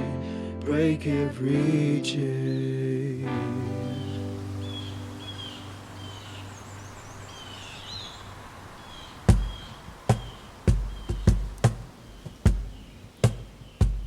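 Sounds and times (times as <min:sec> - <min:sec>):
birds chirping: 0:02.4 - 0:14.0
outdoor background noise: 0:02.5 - 0:14.0
deep kick drum beats: 0:09.3 - 0:14.0.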